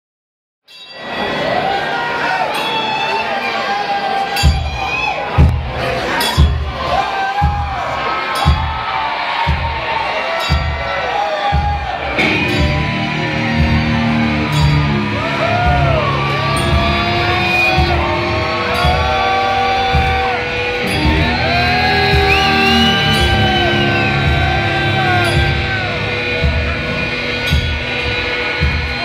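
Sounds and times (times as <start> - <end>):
loud rock band backing: 1.0 - 29.0
electric guitar lead lines: 12.0 - 29.0.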